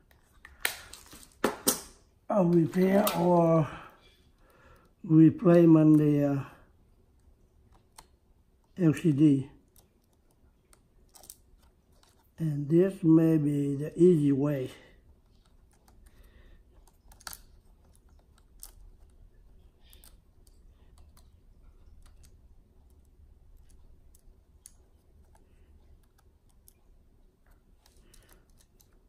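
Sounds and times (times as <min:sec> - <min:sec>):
low steady hum: 0:00.0 - 0:29.0
small objects clicking and tapping: 0:09.7 - 0:12.3.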